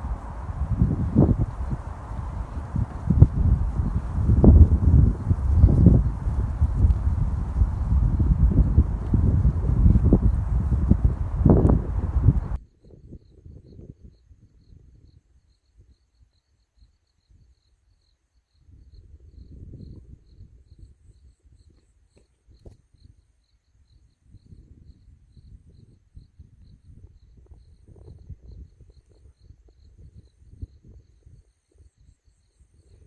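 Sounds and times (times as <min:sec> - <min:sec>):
wind gusting: 0:00.0 - 0:14.1
crickets chirping: 0:00.0 - 0:33.0.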